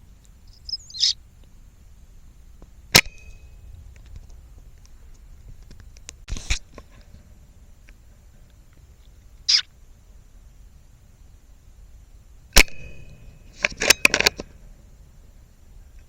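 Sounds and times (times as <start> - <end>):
air rifle shot: 12.6 - 14.1.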